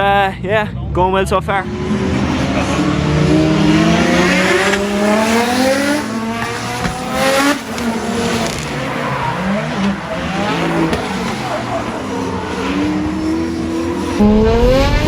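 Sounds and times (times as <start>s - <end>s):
car engine at full throttle: 1.0s - 15.0s
tyres squealing: 1.4s - 15.0s.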